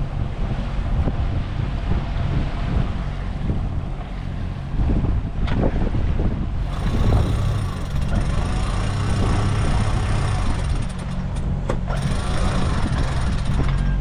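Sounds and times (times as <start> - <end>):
boat engine humming: 0.0 - 14.0.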